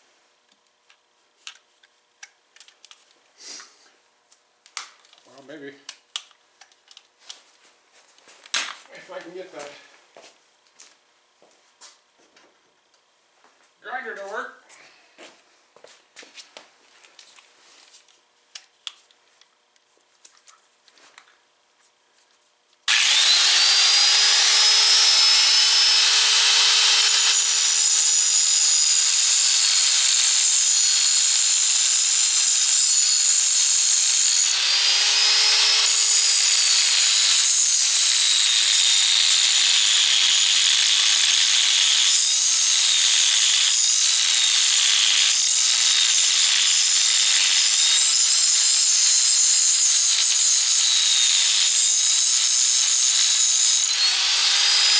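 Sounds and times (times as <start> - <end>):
angle grinder grinding metal: 22.9 - 54.9.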